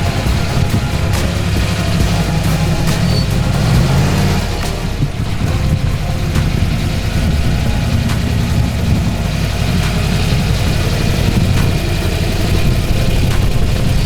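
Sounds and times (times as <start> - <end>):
engine running at low revs: 0.0 - 14.0.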